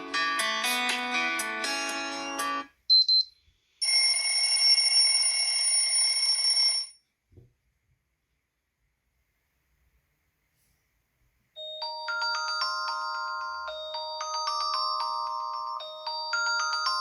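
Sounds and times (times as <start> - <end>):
melodic phone ringtone: 3.8 - 7.0, 11.6 - 17.0.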